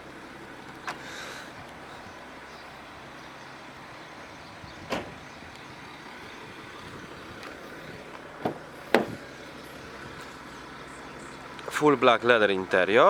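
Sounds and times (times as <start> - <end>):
car parts clunking: 0.1 - 1.8, 4.7 - 5.7, 6.8 - 11.9.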